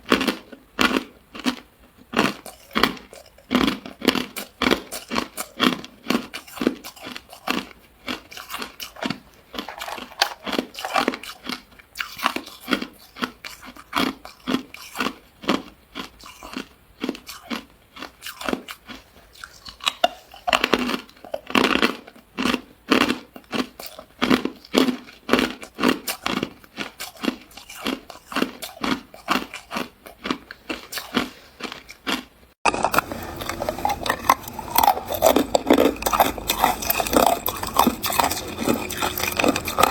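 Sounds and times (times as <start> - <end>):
ice crunching and chewing: 0.0 - 39.9.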